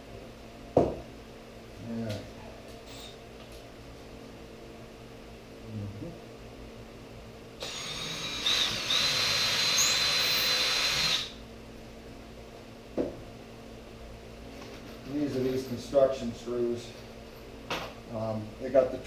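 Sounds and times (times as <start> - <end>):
power drill driving screw: 7.6 - 11.4.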